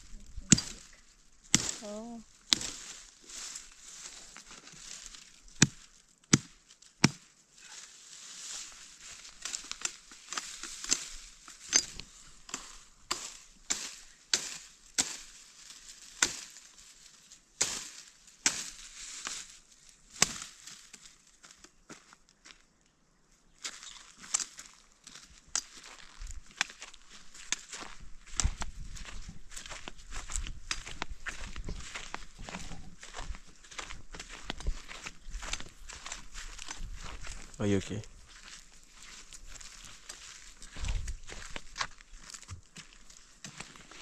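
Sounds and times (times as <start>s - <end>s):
wood cracking and crunching: 8.2s - 16.7s, 23.6s - 44.0s.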